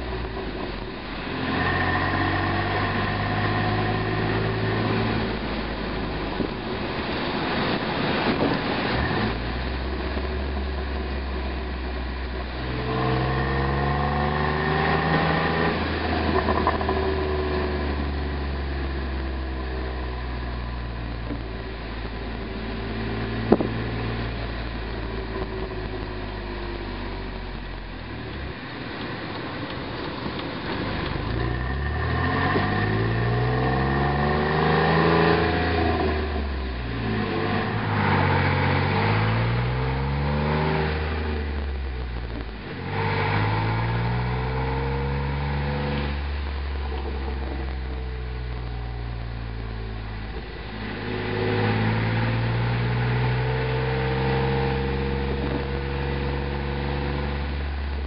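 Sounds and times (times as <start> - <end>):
car engine revving through gears: 0.0 - 58.0
exhaust pop: 23.3 - 24.0.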